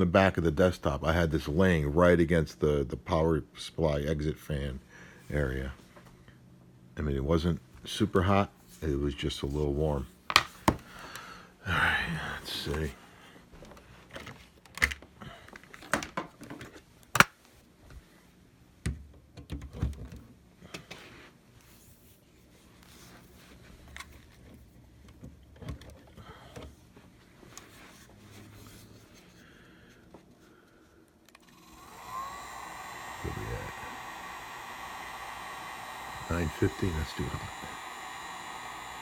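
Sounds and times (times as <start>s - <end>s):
hot-air tool blowing: 31.3s - 39.0s.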